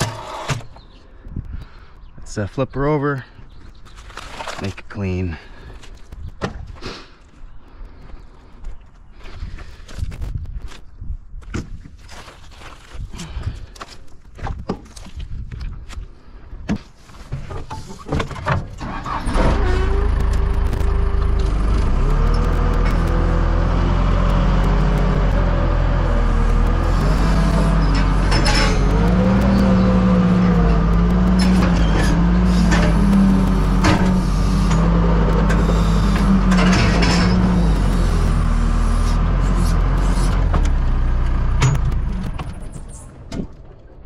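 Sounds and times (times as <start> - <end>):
tractor engine running: 18.6 - 44.0
knocks and clicks: 19.9 - 23.5, 26.3 - 38.2.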